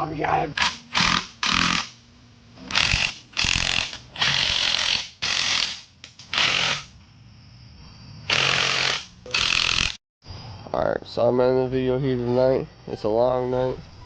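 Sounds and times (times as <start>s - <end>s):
handheld power tool bursts: 8.3s - 10.0s.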